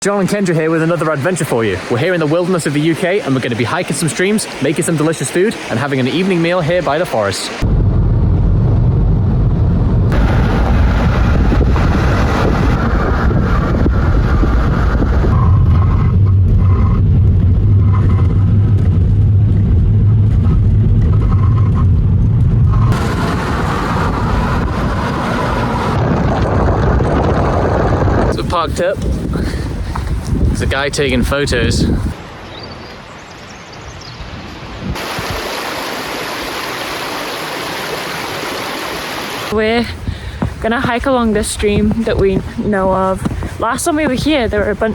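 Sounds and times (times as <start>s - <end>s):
stream water rushing: 0.0s - 7.7s, 22.9s - 26.0s, 34.4s - 40.0s
car road and engine rumble: 7.6s - 28.4s
outdoor hiss: 35.0s - 40.6s.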